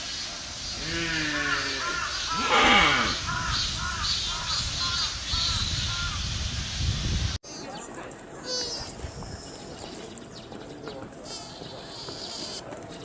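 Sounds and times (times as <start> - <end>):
deer calling: 0.8 - 6.2.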